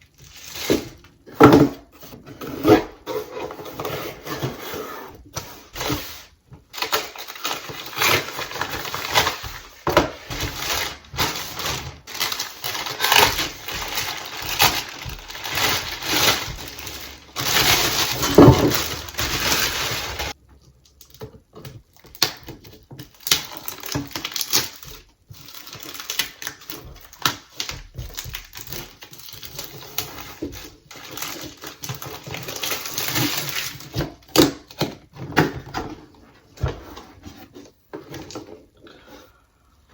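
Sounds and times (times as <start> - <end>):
packaging rustling: 2.3 - 20.4, 23.2 - 34.3.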